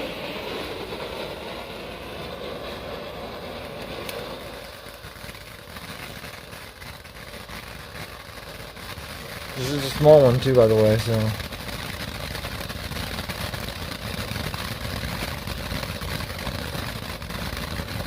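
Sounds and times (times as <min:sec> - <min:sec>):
firework fountain hissing: 0:00.0 - 0:18.0.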